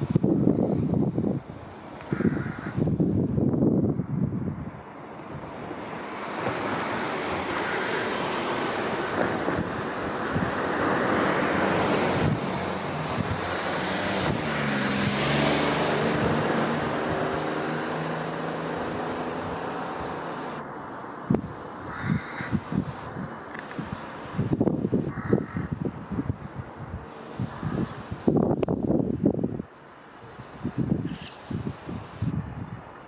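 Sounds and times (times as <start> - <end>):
road traffic passing: 0.0 - 33.0
low engine hum: 8.2 - 21.8.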